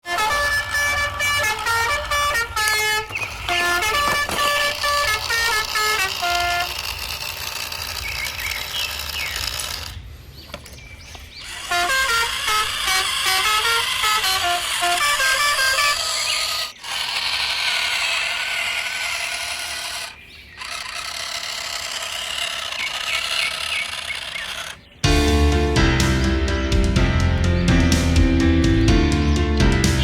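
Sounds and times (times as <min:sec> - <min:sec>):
bright horn-like tune: 0:00.0 - 0:07.0, 0:11.4 - 0:16.4.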